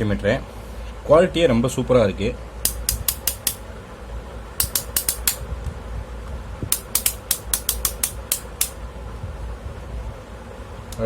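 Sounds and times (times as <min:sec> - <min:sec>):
multimeter clicks: 0:02.7 - 0:03.6, 0:04.6 - 0:05.4, 0:06.7 - 0:08.8.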